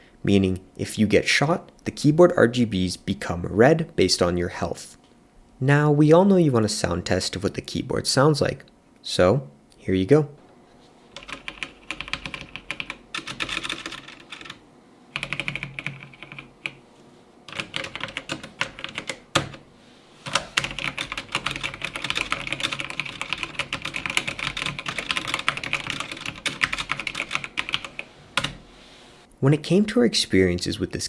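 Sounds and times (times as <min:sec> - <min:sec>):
mechanical keyboard typing: 0:11.1 - 0:16.8, 0:17.5 - 0:19.6, 0:20.3 - 0:28.6.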